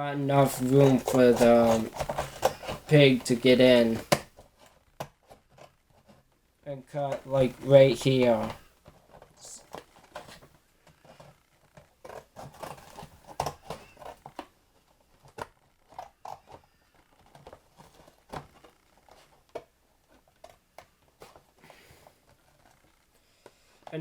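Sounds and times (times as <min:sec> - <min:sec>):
scissors snipping cardboard: 0:00.4 - 0:04.4, 0:12.0 - 0:14.5.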